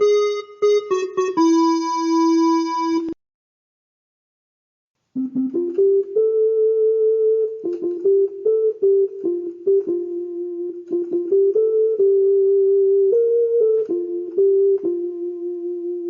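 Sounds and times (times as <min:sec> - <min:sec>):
electronic keyboard melody: 0:00.0 - 0:03.2, 0:05.2 - 0:16.0.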